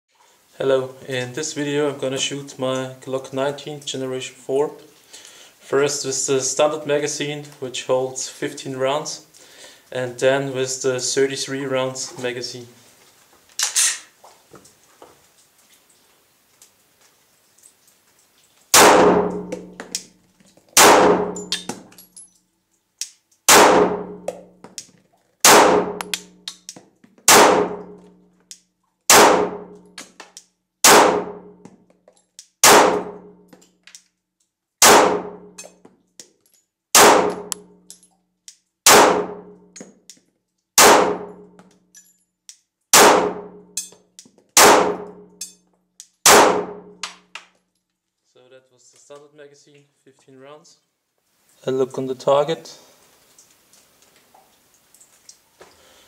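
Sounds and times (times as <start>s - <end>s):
pistol shots with ringing tail: 18.7s - 19.8s, 20.8s - 21.8s, 23.5s - 24.3s, 25.4s - 26.4s, 27.3s - 28.0s, 29.1s - 29.8s, 30.8s - 31.6s, 32.6s - 33.3s, 34.8s - 35.5s, 37.0s - 37.6s, 38.9s - 39.6s, 40.8s - 41.5s, 43.0s - 43.7s, 44.6s - 45.3s, 46.3s - 47.0s.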